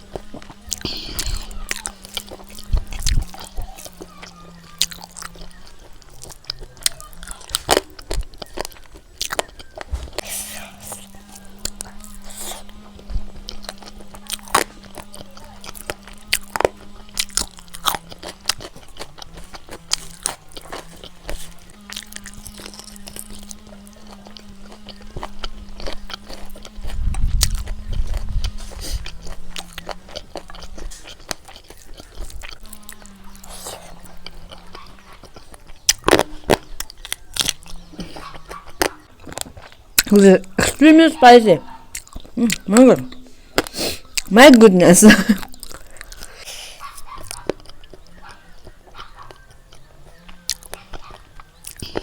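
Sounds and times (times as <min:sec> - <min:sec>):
crisp crunches: 0:00.0 - 0:40.6
faint steady hum: 0:00.0 - 0:48.9
person chewing food: 0:00.0 - 0:52.0
mouth clicks: 0:00.2 - 0:40.8, 0:41.6 - 0:44.7.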